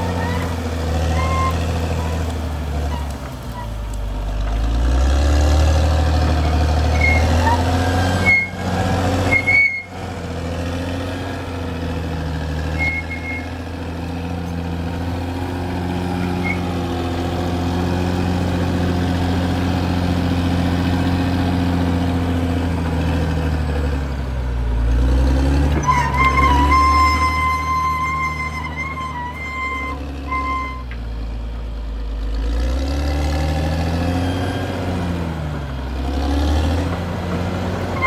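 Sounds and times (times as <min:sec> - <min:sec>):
short high squeaks: 0:00.0 - 0:02.2, 0:06.4 - 0:08.6, 0:09.3 - 0:10.0, 0:12.8 - 0:13.6, 0:16.2 - 0:16.7, 0:25.8 - 0:31.0
bulldozer diesel engine running: 0:00.0 - 0:38.0.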